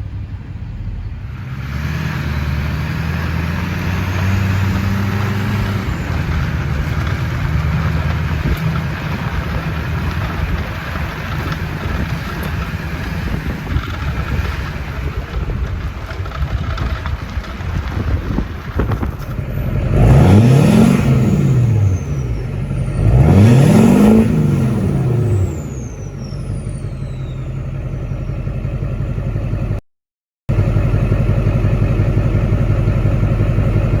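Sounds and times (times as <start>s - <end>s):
diesel engine idling and revving: 0.0s - 29.8s, 30.5s - 34.0s
turbocharger whistle: 19.9s - 28.5s.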